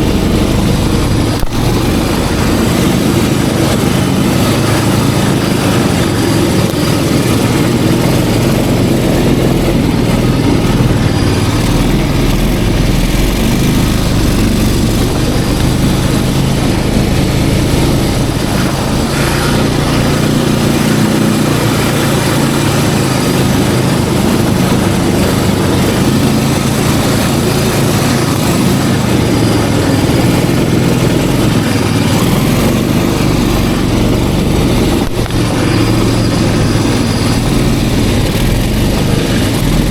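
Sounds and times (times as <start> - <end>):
snowmobile engine droning: 0.0 - 39.9.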